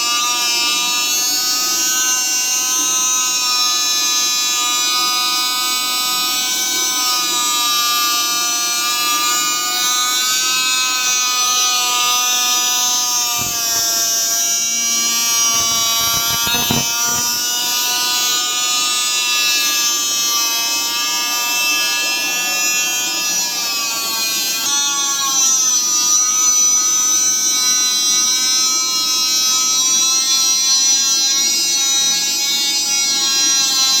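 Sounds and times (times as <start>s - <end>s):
electric grinder whining on steel: 0.0s - 34.0s.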